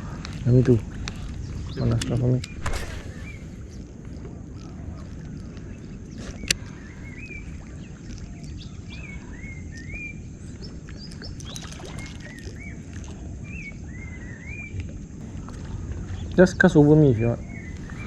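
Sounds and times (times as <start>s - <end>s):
low outdoor rumble: 0.0s - 6.9s
birds chirping: 0.0s - 18.0s
sharp click: 2.0s - 3.5s.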